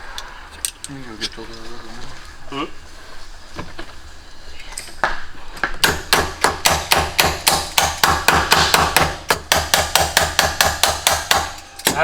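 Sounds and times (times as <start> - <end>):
hammer striking rhythmically: 5.8 - 12.0.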